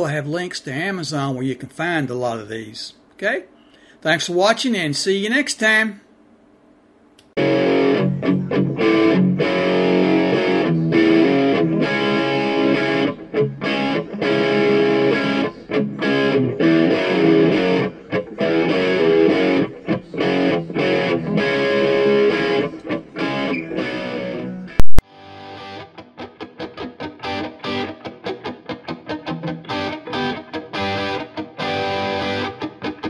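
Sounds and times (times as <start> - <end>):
distorted electric guitar music: 7.4 - 33.0
sharp click: 24.8 - 25.0.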